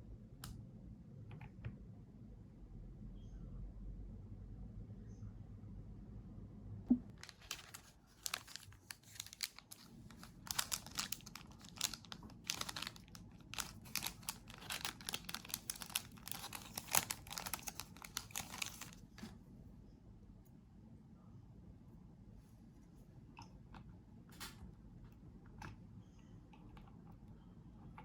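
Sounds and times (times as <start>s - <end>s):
packaging wrap crinkling: 7.1s - 19.3s.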